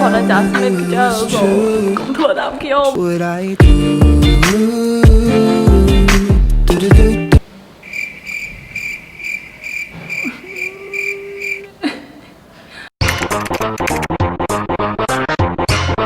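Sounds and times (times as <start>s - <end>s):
music: 0.0s - 7.4s, 13.0s - 16.0s
cricket chirping: 7.7s - 11.8s.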